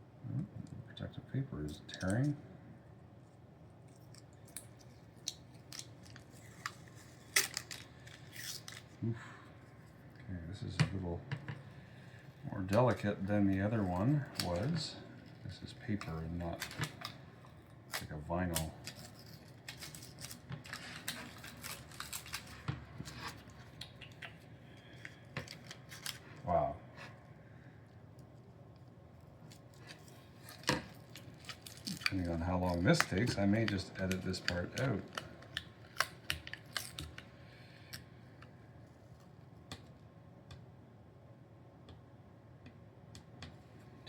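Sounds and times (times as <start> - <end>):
protective paper peeling and tearing: 17.9 - 23.5, 29.5 - 37.0.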